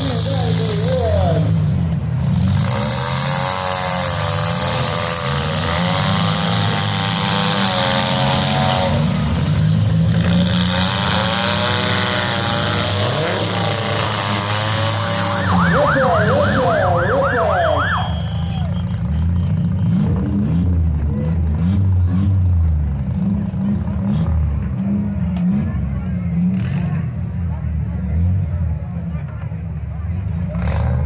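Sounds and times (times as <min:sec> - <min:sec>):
car engines revving: 0:00.0 - 0:31.0
siren-like wail: 0:15.2 - 0:18.9.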